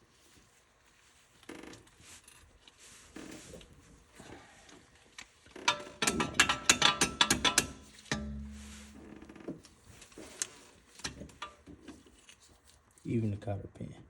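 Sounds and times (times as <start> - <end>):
tools scraping and clicking on metal: 5.5 - 12.9.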